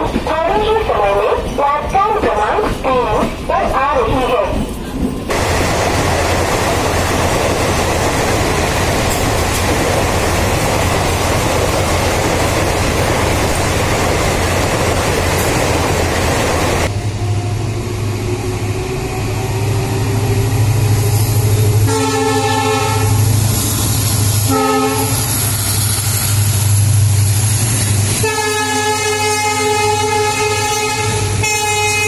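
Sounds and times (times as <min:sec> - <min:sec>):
train wheel and wind rush: 0:00.0 - 0:32.0
train horn: 0:21.7 - 0:23.3, 0:24.5 - 0:25.4, 0:28.2 - 0:32.0.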